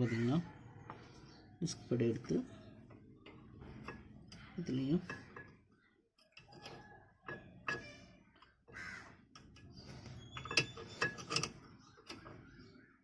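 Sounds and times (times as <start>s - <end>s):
metallic clicks and clinks: 9.4s - 12.3s.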